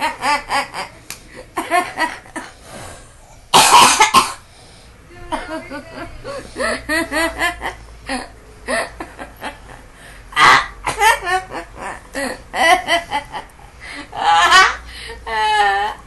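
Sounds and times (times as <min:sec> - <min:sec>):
woman laughing hard: 0:05.2 - 0:16.0.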